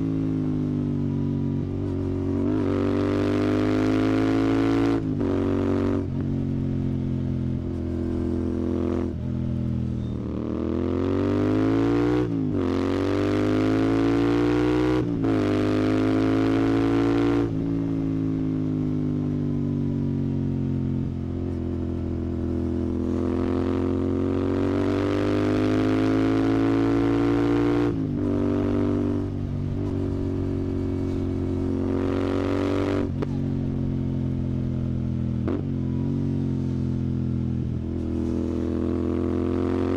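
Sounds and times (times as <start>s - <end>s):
motorcycle engine revving: 0.0s - 19.4s, 20.0s - 39.9s.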